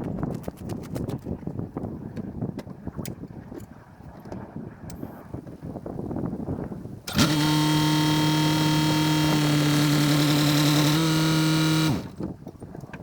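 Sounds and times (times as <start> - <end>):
motor running: 7.1 - 12.2.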